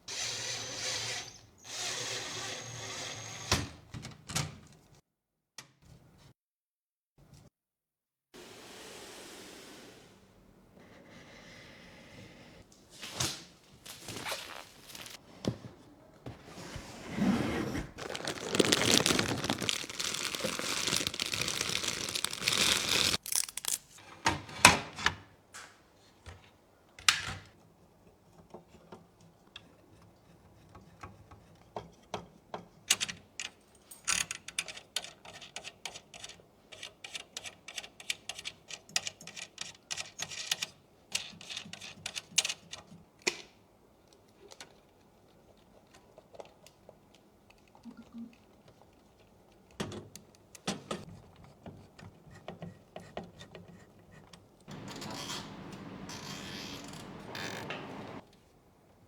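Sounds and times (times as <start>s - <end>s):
packaging rustling and tearing: 13.2s - 15.2s, 17.8s - 24.0s.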